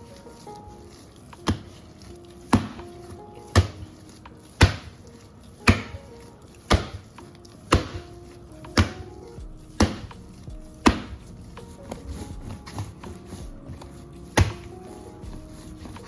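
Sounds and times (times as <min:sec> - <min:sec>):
quiet background music: 0:00.0 - 0:16.0
knife chopping on cutting board: 0:02.5 - 0:02.8, 0:03.5 - 0:03.8, 0:04.6 - 0:04.9, 0:05.6 - 0:06.0, 0:06.7 - 0:07.0, 0:07.7 - 0:08.0, 0:08.8 - 0:09.1, 0:09.8 - 0:10.1, 0:10.8 - 0:11.2, 0:14.4 - 0:14.6.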